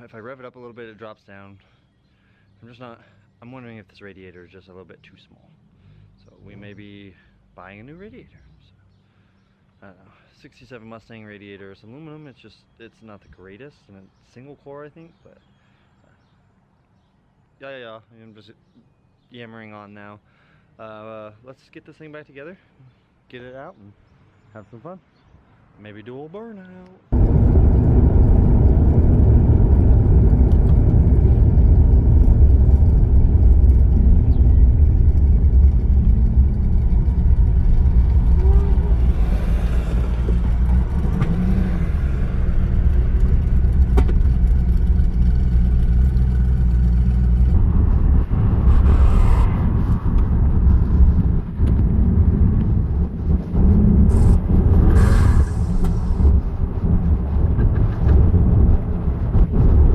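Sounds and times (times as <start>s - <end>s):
vehicle engine rumbling: 27.1s - 59.9s.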